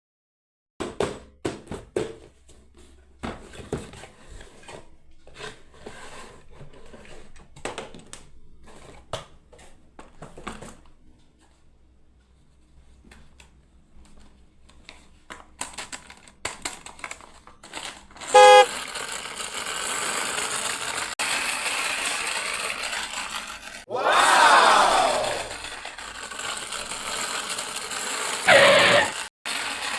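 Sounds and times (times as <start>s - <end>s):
toy car whirring: 17.1s - 23.8s, 24.6s - 29.9s
electronic horn beep: 18.4s - 18.7s.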